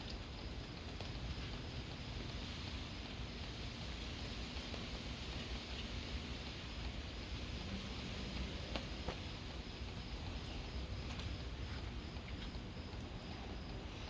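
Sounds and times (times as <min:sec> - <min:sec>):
steady rain hiss: 0:00.0 - 0:14.0.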